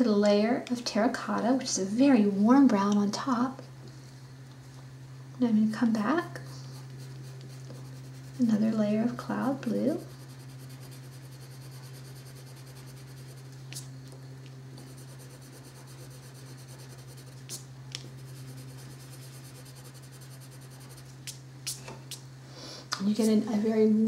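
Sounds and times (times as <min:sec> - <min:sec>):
steady low hum: 0:00.0 - 0:24.0
pencil scratching on paper: 0:06.4 - 0:08.8, 0:09.5 - 0:13.8, 0:14.8 - 0:21.2.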